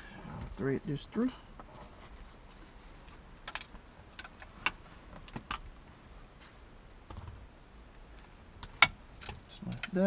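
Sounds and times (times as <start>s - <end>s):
seatbelt buckle clicks and rattles: 3.4s - 5.8s, 8.6s - 10.0s.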